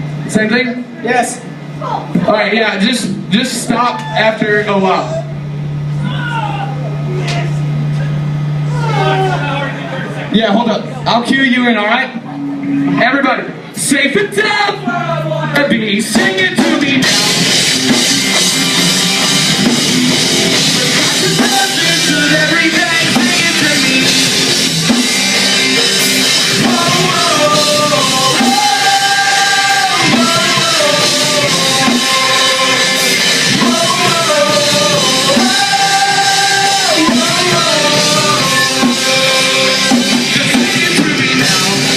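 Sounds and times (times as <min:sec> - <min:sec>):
rock band playing: 0:10.9 - 0:41.9
person singing long notes: 0:26.4 - 0:41.9.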